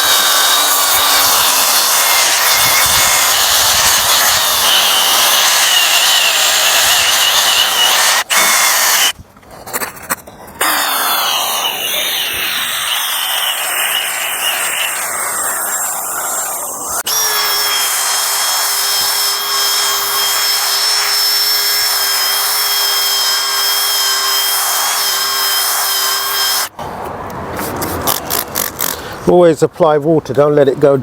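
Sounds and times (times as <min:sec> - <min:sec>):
electric sander whining: 0:00.0 - 0:09.2, 0:10.6 - 0:26.7.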